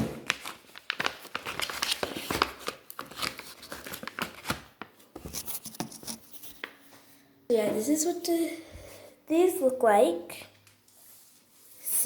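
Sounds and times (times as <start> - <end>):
packaging rustling and clicking: 0.0 - 6.2.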